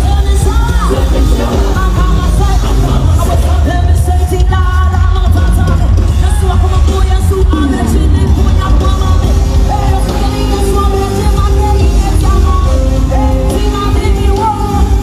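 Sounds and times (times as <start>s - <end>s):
voices singing gospel: 0.0s - 5.7s
band with heavy bass: 0.0s - 15.0s.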